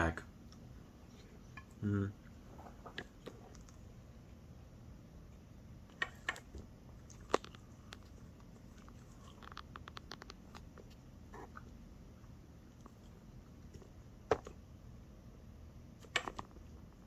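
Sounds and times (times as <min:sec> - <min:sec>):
quiet chewing: 0:00.4 - 0:04.4, 0:05.3 - 0:14.6.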